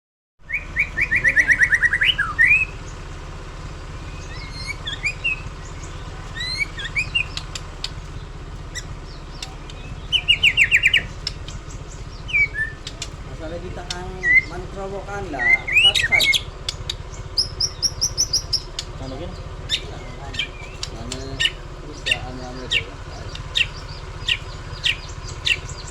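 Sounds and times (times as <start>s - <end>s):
bird singing whistled notes: 0.4s - 25.9s
steady low hum: 0.4s - 25.9s.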